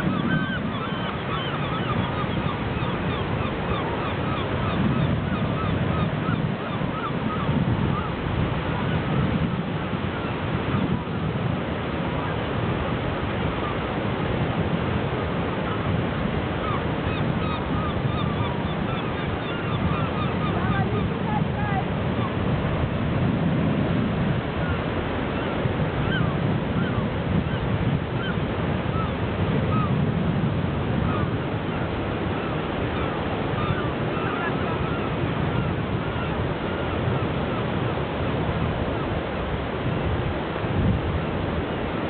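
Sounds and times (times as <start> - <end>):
gulls calling: 0.0 - 9.2, 15.0 - 23.0, 24.4 - 30.0, 30.8 - 39.6.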